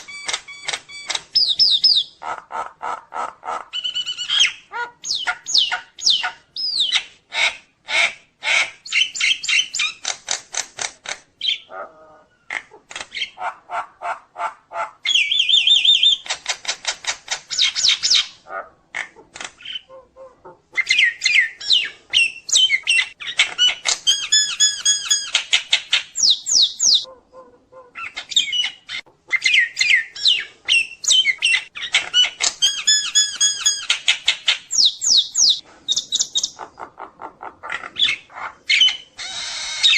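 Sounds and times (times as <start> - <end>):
myna bird singing: 0.0 - 2.3, 3.7 - 7.2, 15.0 - 16.3, 17.4 - 18.4, 20.7 - 27.1, 28.0 - 37.0, 37.6 - 39.9.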